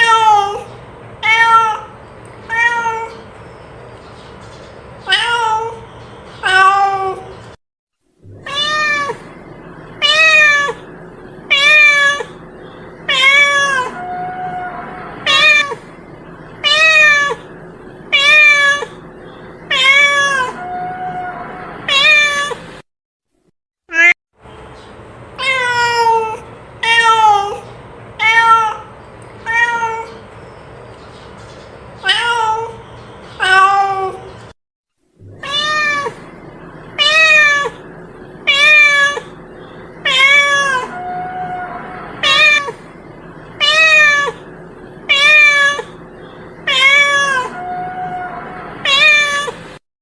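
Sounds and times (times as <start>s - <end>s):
cat meowing: 0.0s - 3.2s, 5.0s - 5.8s, 6.4s - 7.3s, 8.3s - 9.3s, 10.0s - 10.8s, 11.5s - 12.4s, 13.1s - 15.8s, 16.6s - 17.5s, 18.1s - 19.0s, 19.7s - 22.6s, 25.4s - 27.6s, 28.2s - 30.2s, 32.0s - 32.8s, 33.4s - 34.3s, 35.3s - 36.3s, 37.0s - 37.8s, 38.4s - 39.4s, 40.0s - 42.9s, 43.6s - 44.5s, 45.1s - 46.0s, 46.6s - 49.6s.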